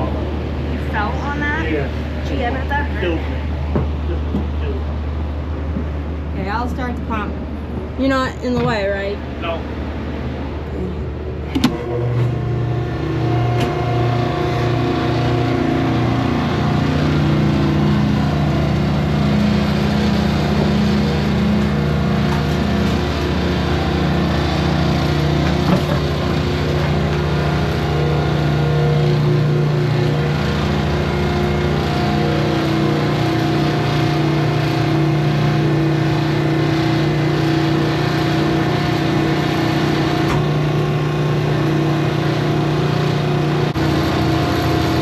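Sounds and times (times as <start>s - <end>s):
pump motor humming: 0.0s - 45.0s.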